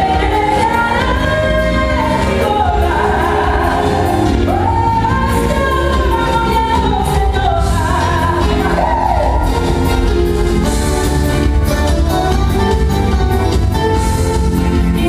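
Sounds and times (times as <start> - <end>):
person singing pop melody: 0.0 - 11.0
steady bass line: 0.0 - 15.0.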